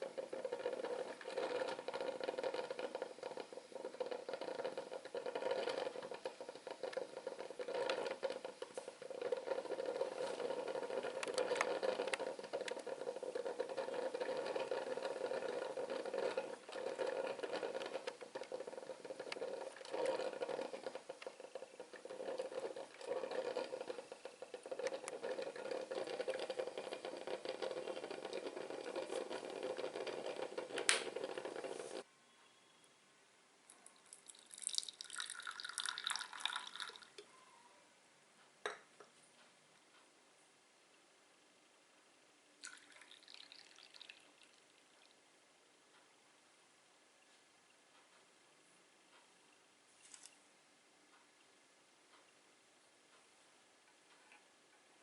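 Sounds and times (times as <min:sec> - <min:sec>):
coffee maker gurgling and sputtering: 0:00.0 - 0:32.1, 0:34.1 - 0:37.3, 0:42.6 - 0:45.1.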